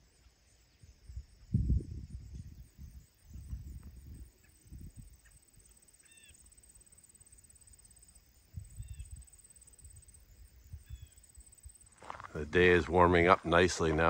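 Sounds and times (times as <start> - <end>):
insect trill: 0.0 - 14.0
bird calls: 4.3 - 6.5, 10.8 - 11.3
footsteps on trail: 11.9 - 14.0.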